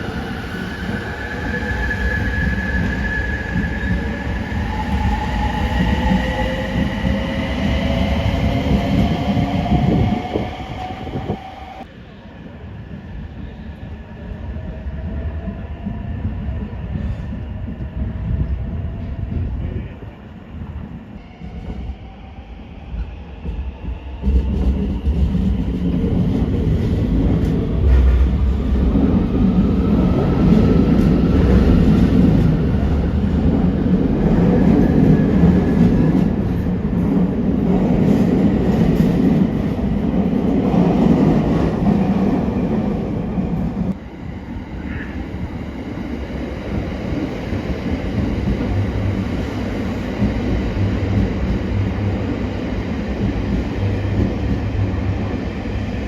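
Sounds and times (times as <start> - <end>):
train wheels rumbling on rails: 0.0 - 56.0.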